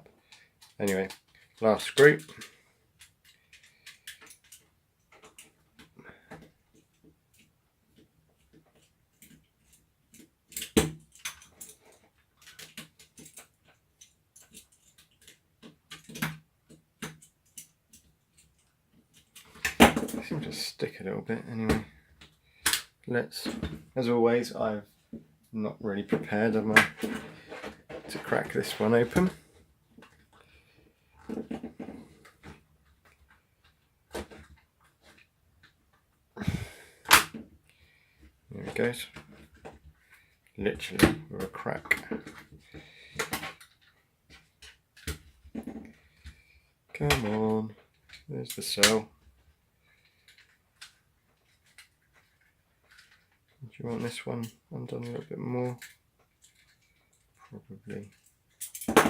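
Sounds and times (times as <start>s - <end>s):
plastic housing clicks and creaks: 0.1s - 20.6s, 49.9s - 59.0s
plastic housing and screws clicking: 0.2s - 7.5s.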